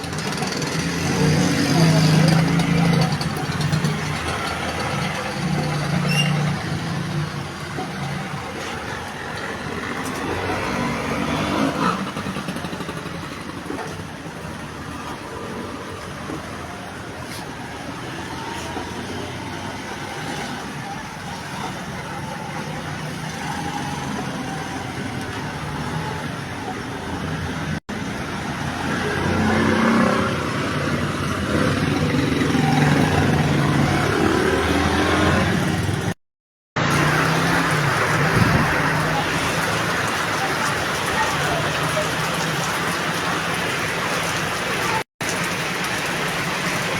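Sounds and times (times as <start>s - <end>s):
vehicle engine: 0.0s - 36.2s, 36.8s - 46.9s
road traffic noise: 0.0s - 46.9s.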